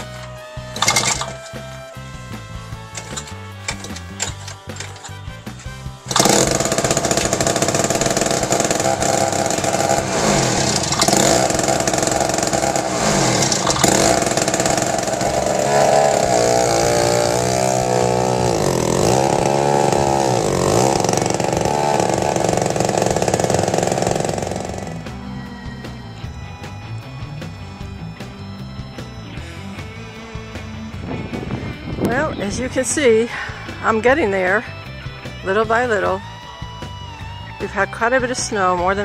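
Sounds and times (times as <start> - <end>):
snowblower engine running: 0.0 - 39.0.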